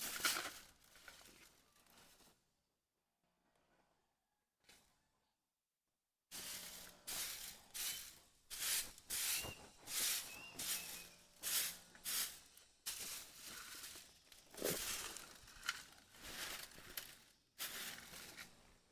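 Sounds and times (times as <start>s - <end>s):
faint high chirps: 9.2s - 11.2s.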